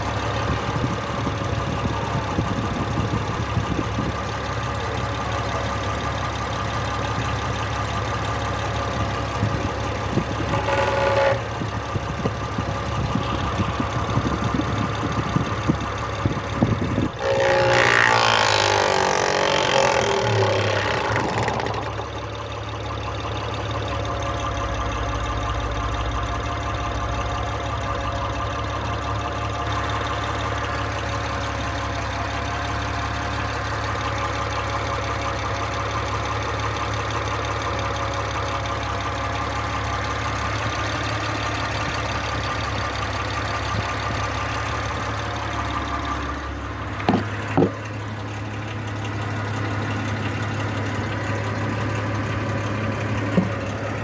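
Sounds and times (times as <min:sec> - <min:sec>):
engine idling with knocking: 0:00.0 - 0:54.0.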